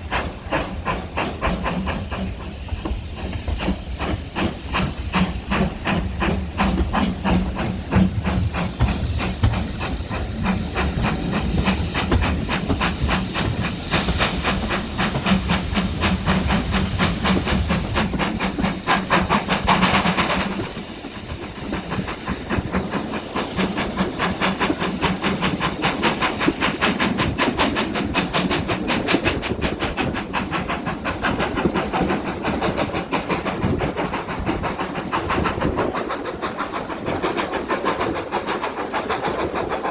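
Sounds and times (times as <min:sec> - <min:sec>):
rush of steam: 0:00.0 - 0:39.9
steady hiss of steam: 0:00.0 - 0:39.9
steam locomotive exhaust beats: 0:00.0 - 0:39.9.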